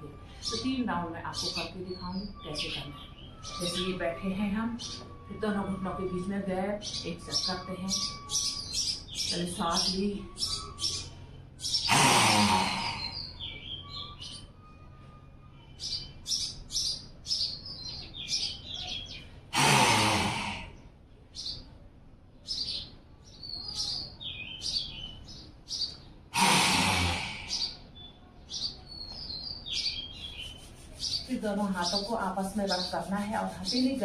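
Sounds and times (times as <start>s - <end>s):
birds chirping: 0.0s - 34.0s
woman roaring exhalations: 11.9s - 13.3s, 19.5s - 20.8s, 26.3s - 27.8s.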